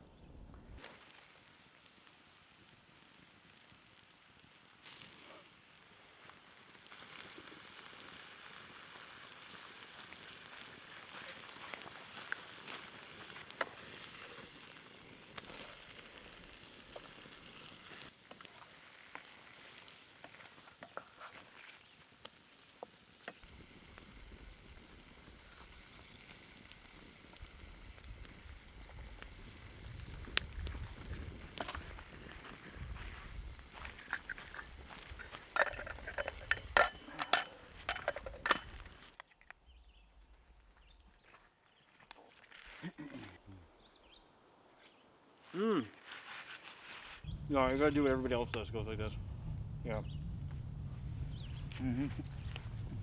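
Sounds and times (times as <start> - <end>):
campfire crackling and popping: 0.0 - 53.0
food sizzling: 0.8 - 39.2
metal utensils clinking on cookware: 34.0 - 38.9.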